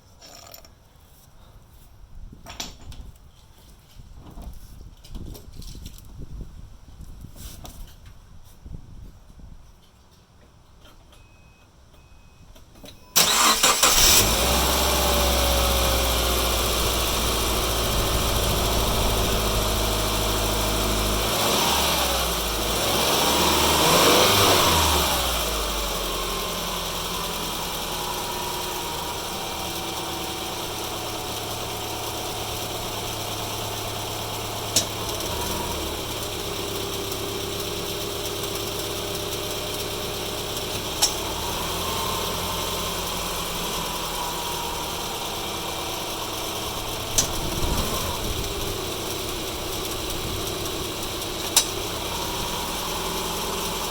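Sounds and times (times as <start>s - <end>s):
starter cranking engine: 13.2s - 26.7s, 40.5s - 53.9s
car engine revving and idling: 13.2s - 53.9s.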